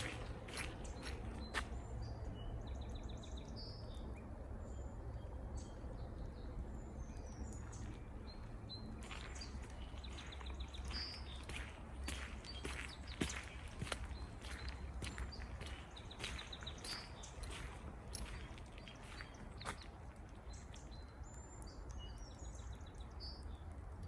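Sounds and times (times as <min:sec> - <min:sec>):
footsteps: 0:00.0 - 0:01.8, 0:09.0 - 0:20.4.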